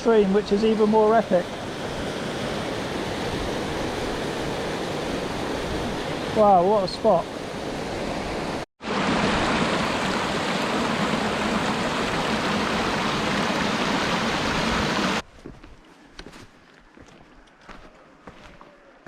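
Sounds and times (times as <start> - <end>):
waterfall rushing: 0.9 - 15.2.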